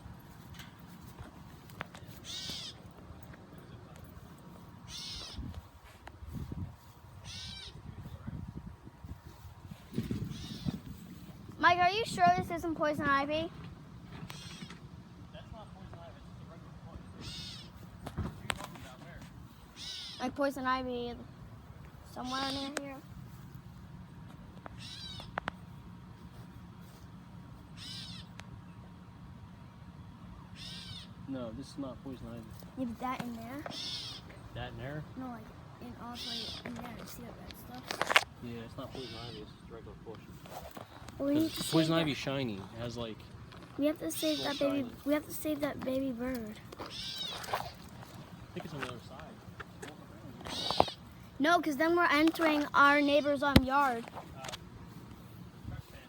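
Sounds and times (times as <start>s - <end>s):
bird calling: 0.0s - 3.0s, 3.6s - 5.8s, 6.4s - 8.0s, 9.3s - 13.0s, 14.2s - 14.8s, 17.0s - 17.9s, 19.5s - 21.3s, 22.0s - 23.1s, 24.7s - 25.5s, 27.7s - 28.4s, 30.4s - 31.2s, 32.7s - 54.2s.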